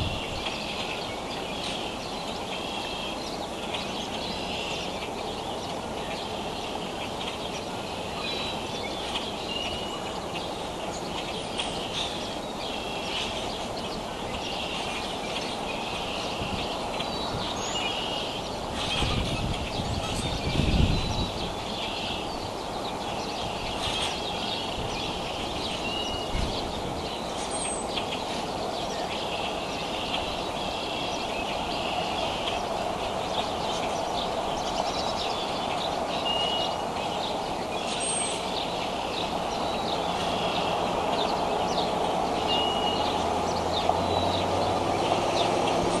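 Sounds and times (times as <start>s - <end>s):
outdoor background noise: 0.0s - 46.0s
low engine hum: 39.2s - 46.0s.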